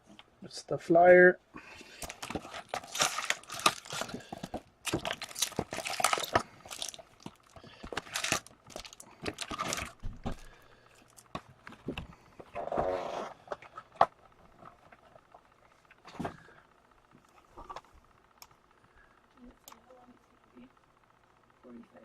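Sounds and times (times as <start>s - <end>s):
wrappers crinkling and tearing: 1.8s - 10.0s.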